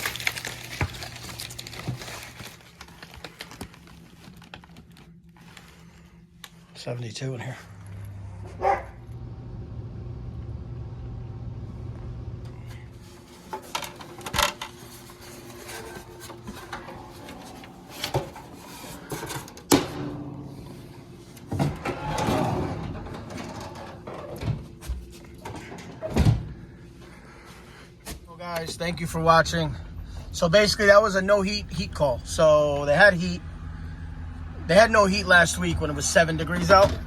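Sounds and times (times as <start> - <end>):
low steady hum: 0.0 - 37.0
objects knocking and clunking: 21.4 - 26.5.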